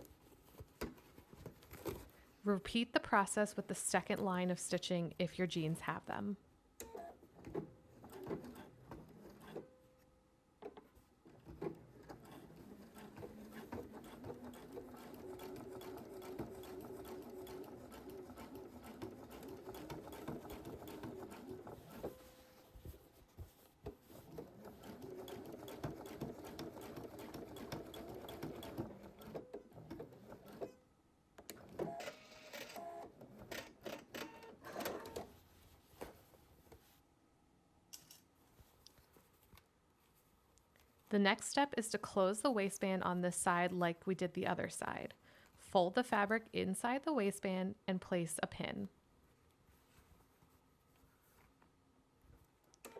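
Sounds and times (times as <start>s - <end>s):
sewing machine stitching: 6.8s - 9.7s, 11.4s - 22.4s, 24.1s - 30.8s.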